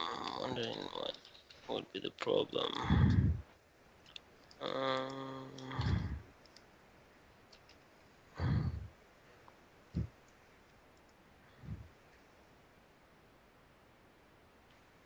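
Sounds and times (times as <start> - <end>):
person saying um: 0.0 - 3.4, 4.6 - 6.2
faint computer clicks: 7.5 - 7.9.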